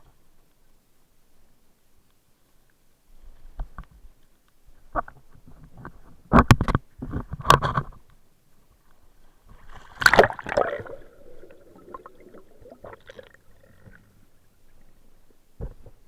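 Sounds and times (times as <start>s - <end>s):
water splashing and gurgling: 9.7s - 14.2s
low water bubbling: 10.0s - 15.0s.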